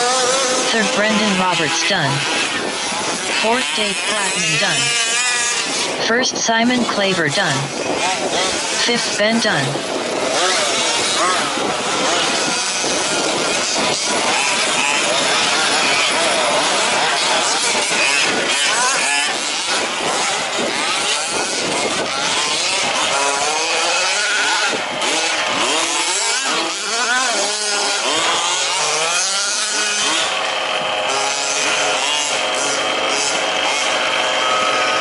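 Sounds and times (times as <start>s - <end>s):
rc truck engines revving: 0.0s - 35.0s.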